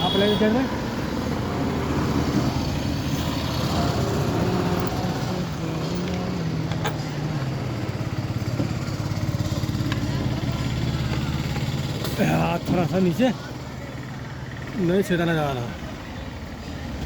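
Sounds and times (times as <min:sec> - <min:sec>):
motorcycle engine idling: 0:06.2 - 0:16.6.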